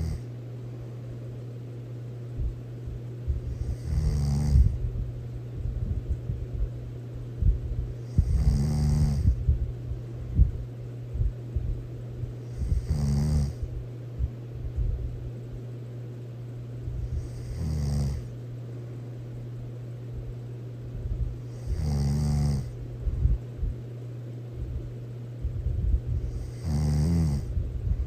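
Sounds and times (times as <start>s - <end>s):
person snoring: 0.0s - 0.3s, 3.5s - 4.8s, 8.0s - 9.4s, 12.5s - 13.6s, 17.1s - 18.3s, 21.5s - 22.8s, 26.3s - 27.5s
low hum: 0.0s - 28.0s.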